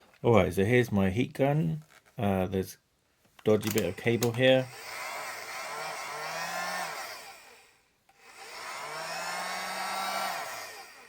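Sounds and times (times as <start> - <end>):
hot air gun fan whirring: 3.6 - 11.0.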